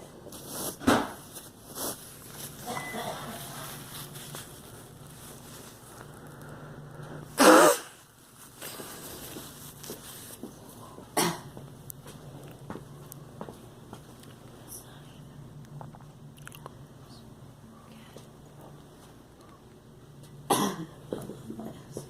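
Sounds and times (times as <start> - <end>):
girl coughing: 2.7 - 3.4, 7.4 - 7.9, 11.2 - 11.5, 20.5 - 21.0.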